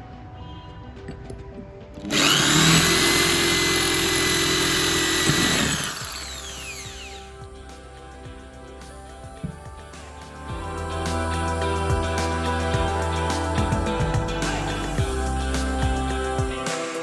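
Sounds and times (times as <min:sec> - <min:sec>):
background music: 0:00.0 - 0:17.0
electric drill whining: 0:02.0 - 0:07.4.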